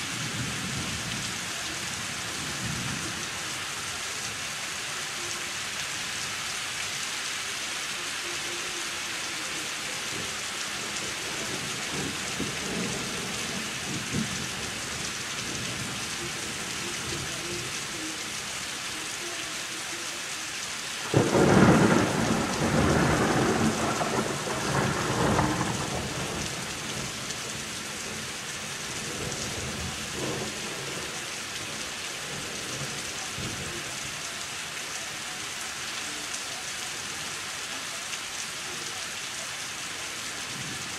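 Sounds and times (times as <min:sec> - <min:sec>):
steady rain: 0:00.0 - 0:40.9
thunder crack and rumble: 0:11.1 - 0:16.0, 0:21.1 - 0:27.4.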